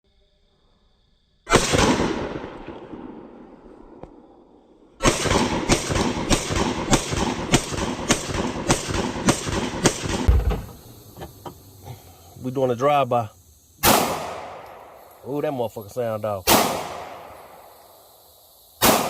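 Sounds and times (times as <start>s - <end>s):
firecracker bang: 5.0s - 11.2s.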